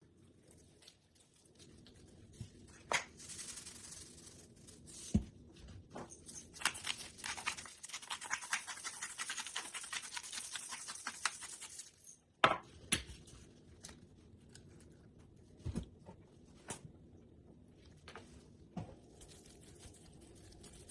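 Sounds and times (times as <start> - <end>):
rapid scratching or rustling: 3.1 - 5.0, 6.6 - 12.0.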